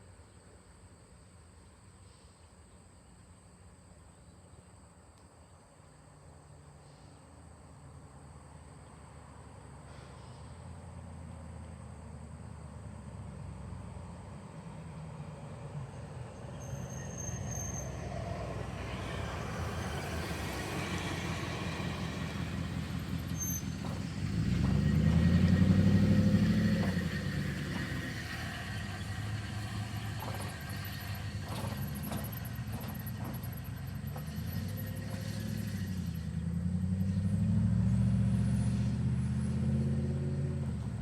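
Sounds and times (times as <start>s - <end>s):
freight train rumbling past: 13.3s - 41.0s
high wheel squeals: 16.3s - 37.1s.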